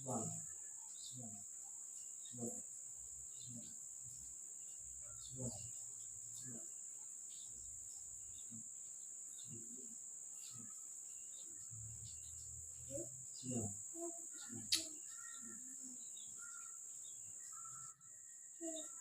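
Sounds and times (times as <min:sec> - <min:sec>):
high-pitched insect chirring: 0:03.2 - 0:19.0.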